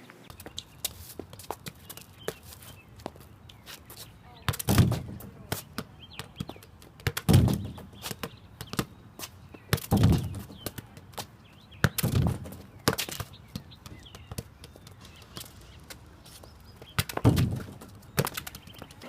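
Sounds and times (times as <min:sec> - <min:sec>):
football kicked heavy thuds: 0:04.6 - 0:06.4, 0:07.0 - 0:08.9, 0:09.7 - 0:10.7, 0:11.8 - 0:14.5, 0:16.9 - 0:18.4.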